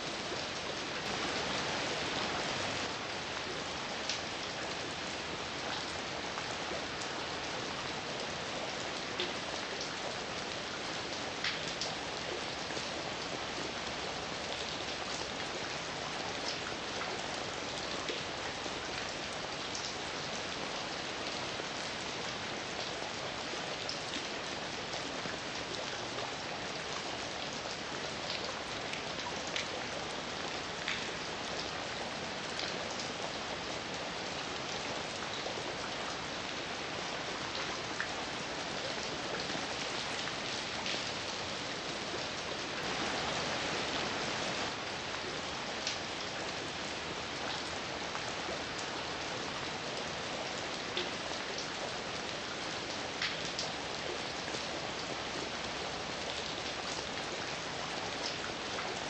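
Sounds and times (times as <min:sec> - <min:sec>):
heavy rain hissing: 0:01.1 - 0:02.9.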